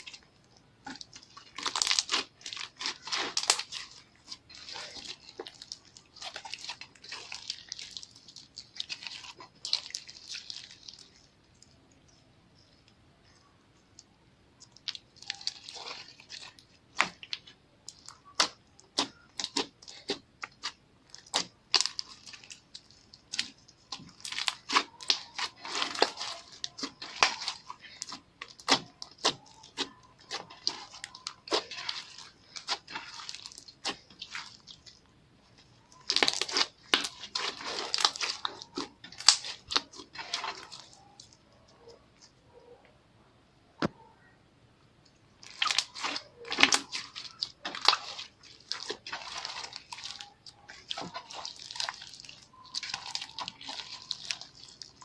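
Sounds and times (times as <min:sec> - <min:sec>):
slime clicking and popping: 0:14.6 - 0:34.7.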